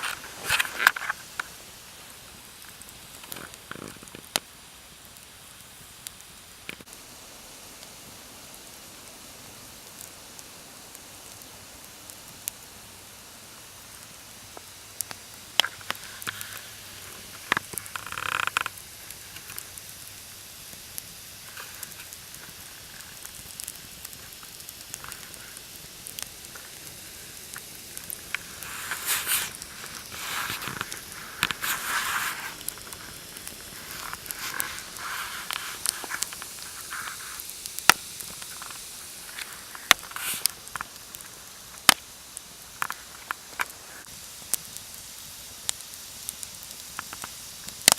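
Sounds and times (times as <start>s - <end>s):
rustling noise: 0.0s - 4.4s, 15.5s - 19.7s, 21.1s - 41.9s
campfire crackling and popping: 0.0s - 47.9s
low hiss: 0.0s - 47.9s.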